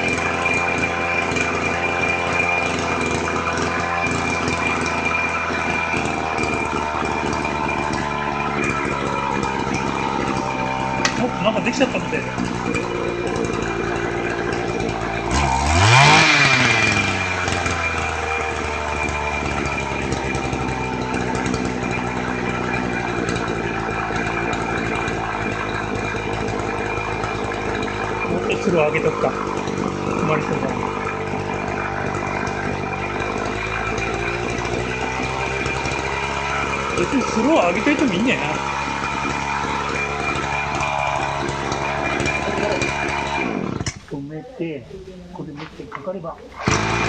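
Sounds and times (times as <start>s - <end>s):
small water pump engine running: 0.0s - 47.0s.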